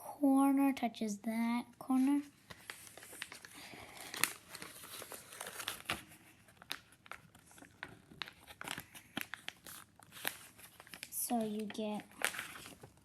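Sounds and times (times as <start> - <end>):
paper rustling and crinkling: 1.9 - 13.0.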